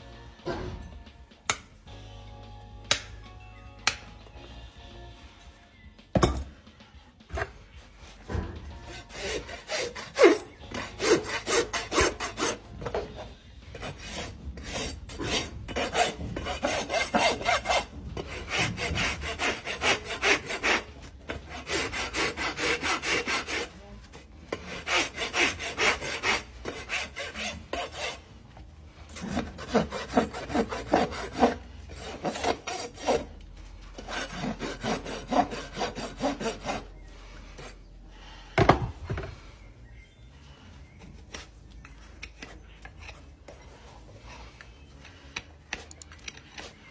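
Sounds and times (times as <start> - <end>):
rasp scraping a hoof: 6.8 - 37.9, 41.3 - 46.9.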